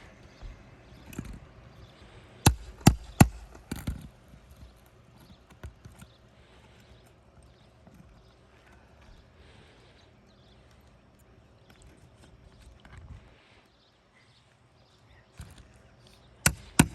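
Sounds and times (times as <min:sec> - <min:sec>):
hand tool knocking under shingles: 0:02.4 - 0:06.1, 0:16.4 - 0:16.9.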